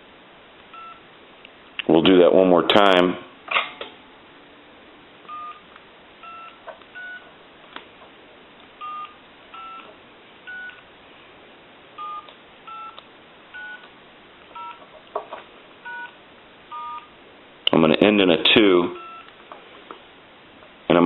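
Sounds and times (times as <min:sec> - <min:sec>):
touch-tone dialing beeps: 0:00.7 - 0:01.0, 0:05.3 - 0:05.6, 0:06.2 - 0:07.2, 0:08.8 - 0:09.9, 0:10.5 - 0:10.8, 0:12.0 - 0:13.0, 0:13.6 - 0:13.8, 0:14.6 - 0:14.8, 0:15.8 - 0:17.1, 0:19.0 - 0:19.3.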